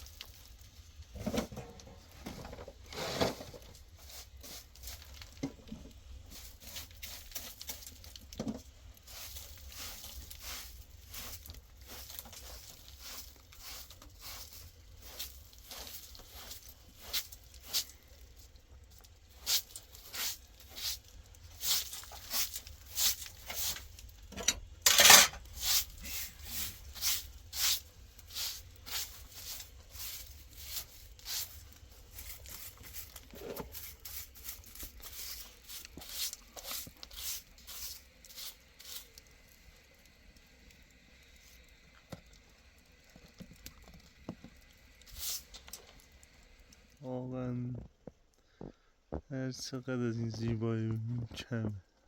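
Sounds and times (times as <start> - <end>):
footsteps crunching in snow: 9.1 - 18.0.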